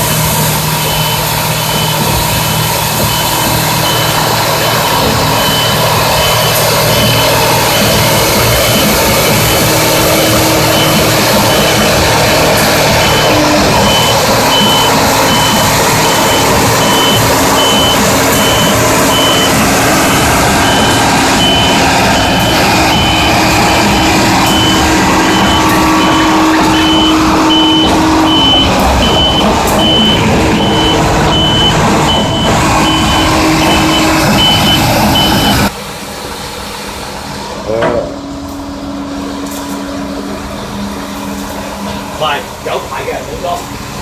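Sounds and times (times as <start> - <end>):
concrete pump running: 0.0 - 44.0
high warning beeps: 0.6 - 12.0, 12.9 - 19.6, 20.2 - 35.7.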